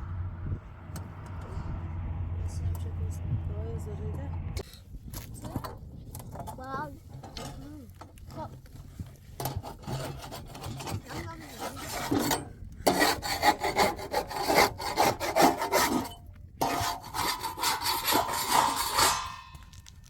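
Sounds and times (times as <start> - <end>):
rough scraping strokes: 6.9 - 20.0.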